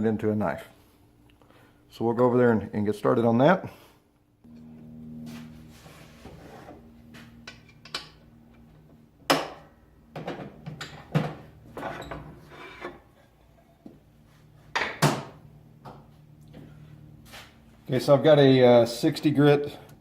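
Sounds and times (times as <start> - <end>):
faint low hum: 4.4 - 20.0
tools and metal clunking: 7.1 - 13.9.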